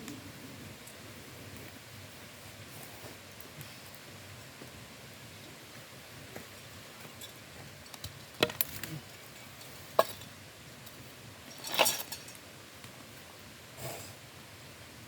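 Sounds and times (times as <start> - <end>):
utensils clinking on dishes: 11.5 - 12.4.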